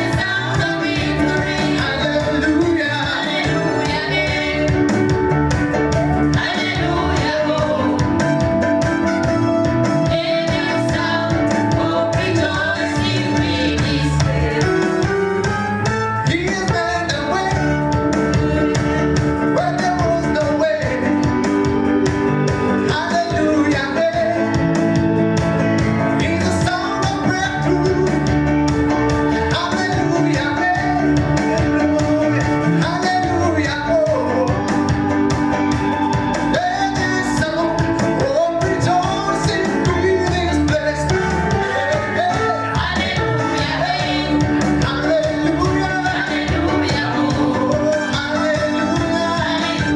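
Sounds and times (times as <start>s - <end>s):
voices singing: 0.0s - 5.2s, 6.0s - 8.5s, 9.8s - 15.4s, 38.8s - 49.9s
instrumental accompaniment with bass: 0.0s - 49.9s.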